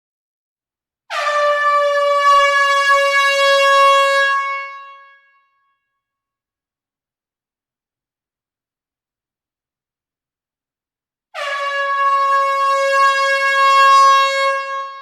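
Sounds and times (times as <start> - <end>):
air horn blast: 11.4 - 15.0.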